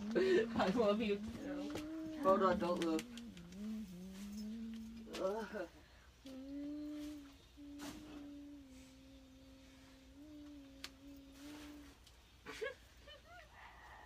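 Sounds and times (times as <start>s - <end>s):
person humming: 0.0s - 12.1s
faint clicks: 1.7s - 5.4s, 10.4s - 11.2s.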